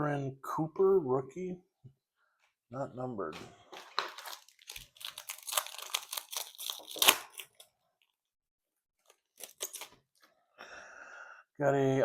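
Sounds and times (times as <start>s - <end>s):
foil wrapper crinkling: 3.7s - 7.7s.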